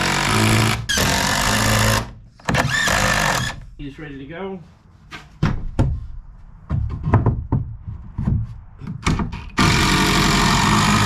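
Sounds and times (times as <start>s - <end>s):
power drill running: 0.0s - 3.6s, 9.6s - 11.0s
hollow knocks on wood: 5.4s - 6.1s, 6.7s - 9.5s.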